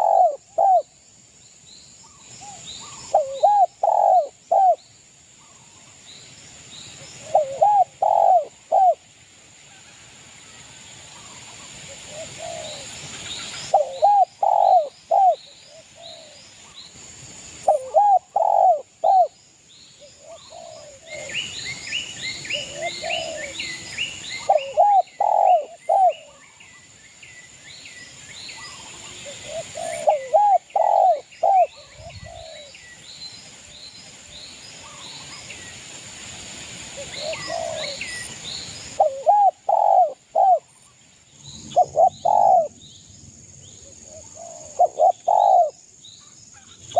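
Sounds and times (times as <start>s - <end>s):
dove cooing: 0.0s - 0.9s, 2.9s - 4.8s, 7.2s - 9.0s, 12.0s - 12.8s, 13.7s - 16.4s, 17.6s - 19.3s, 20.2s - 21.4s, 22.5s - 23.7s, 24.4s - 26.4s, 29.0s - 32.7s, 37.0s - 38.0s, 39.0s - 40.7s, 41.8s - 42.8s, 44.1s - 45.8s
small birds chirping: 0.0s - 9.0s, 11.2s - 35.8s, 37.0s - 46.9s.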